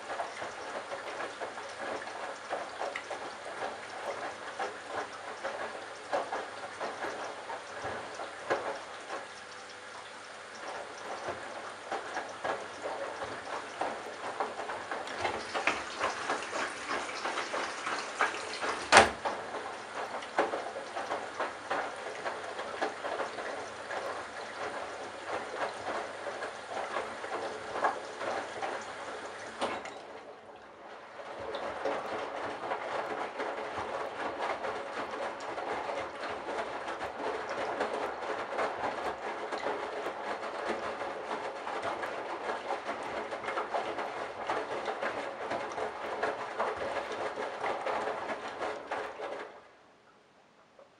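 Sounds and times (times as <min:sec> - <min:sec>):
washing machine drum tumbling: 0:10.5 - 0:49.5.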